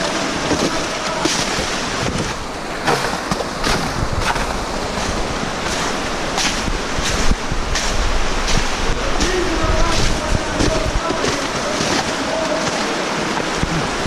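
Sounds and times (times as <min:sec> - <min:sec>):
wind noise on microphone: 0:00.0 - 0:14.0
footsteps crunching on snow: 0:02.9 - 0:13.8.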